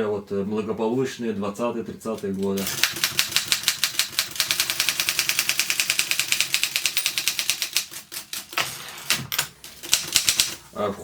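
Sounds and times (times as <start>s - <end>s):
manual typewriter typing fast: 2.3s - 10.6s.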